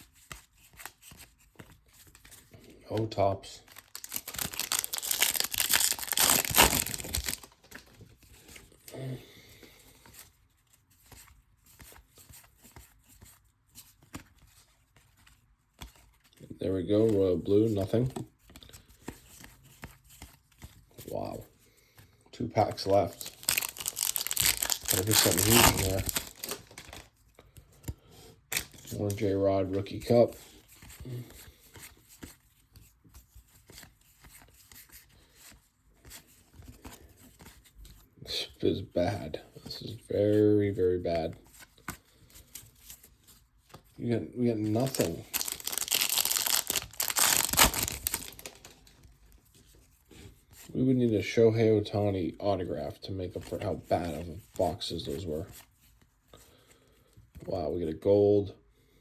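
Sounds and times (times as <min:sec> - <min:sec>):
trading cards rustling and clicking: 0:00.0 - 0:38.7, 0:39.5 - 0:50.7
trading cards being flipped: 0:00.2 - 0:08.7, 0:22.8 - 0:27.9, 0:28.5 - 0:29.3, 0:44.6 - 0:49.1.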